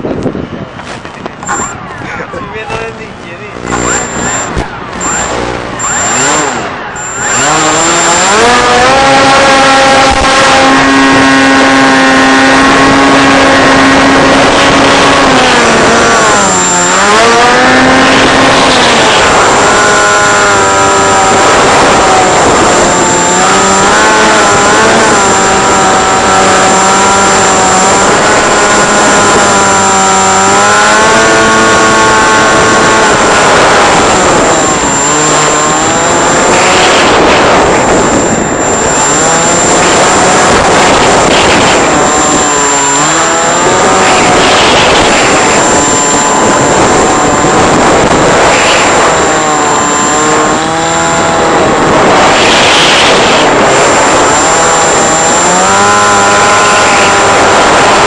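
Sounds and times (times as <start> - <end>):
model aircraft motor and propeller: 0.0 - 58.0
thin high whine: 1.3 - 58.0
wind rushing: 32.4 - 55.8.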